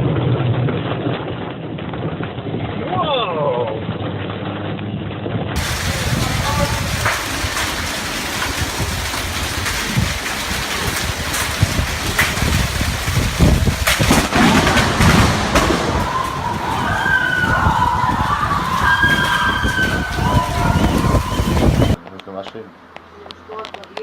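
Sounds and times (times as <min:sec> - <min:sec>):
heavy rain pouring: 0:05.6 - 0:22.0
low thunder rumbling: 0:05.6 - 0:22.0
wavering siren: 0:16.1 - 0:22.0.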